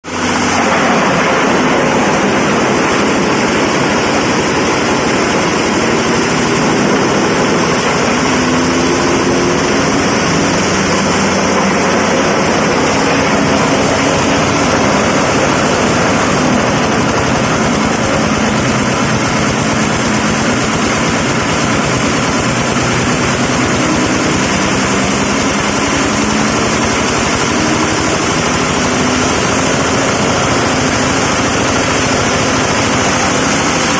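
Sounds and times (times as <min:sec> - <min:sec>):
dense rapid rattle: 0:00.0 - 0:33.9
grinding machine droning: 0:00.0 - 0:33.9.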